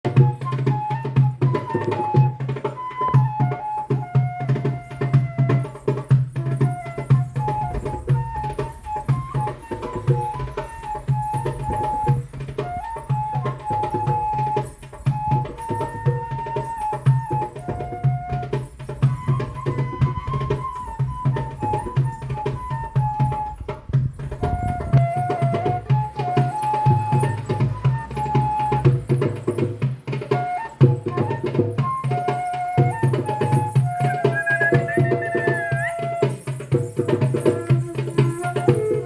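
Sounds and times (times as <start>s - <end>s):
hand drum rhythm: 0.0s - 39.0s
wind instrument melody: 0.0s - 39.0s.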